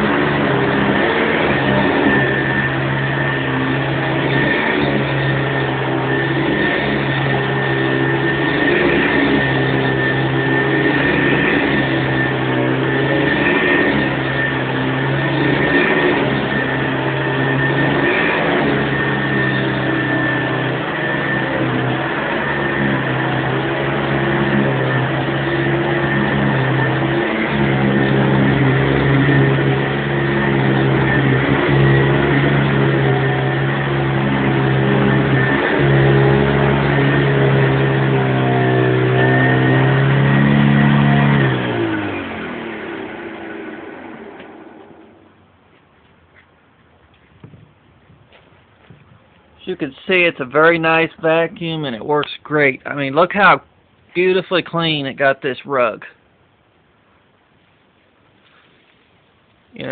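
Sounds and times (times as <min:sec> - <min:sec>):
vacuum cleaner running over a rug: 0:00.0 - 0:45.4.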